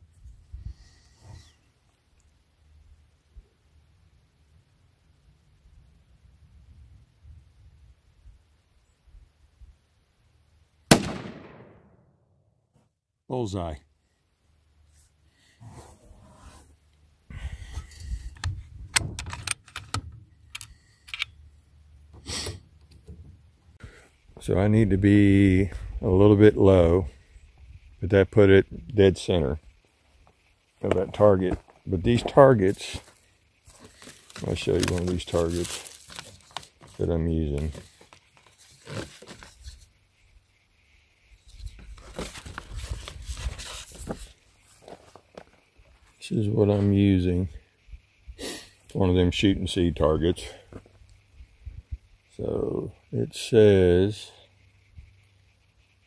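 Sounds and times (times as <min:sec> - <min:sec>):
sharp clicks and metallic rattles: 0:18.3 - 0:21.4
rustling: 0:29.6 - 0:46.9.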